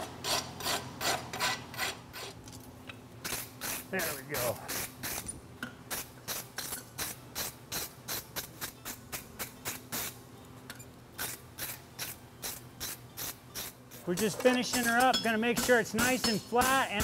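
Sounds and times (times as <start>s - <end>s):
hand file scraping steel: 0.0s - 2.4s.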